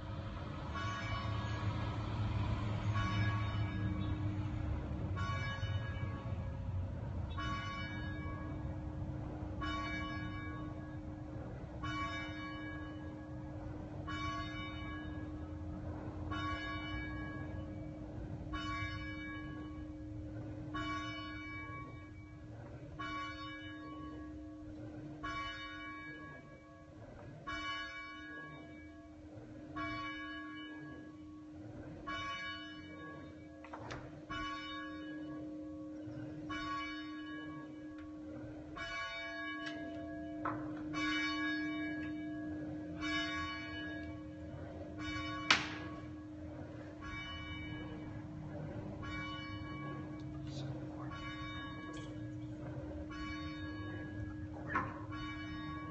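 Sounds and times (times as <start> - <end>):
church bell tolling: 0.0 - 55.9
sharp knocks: 45.4 - 46.0.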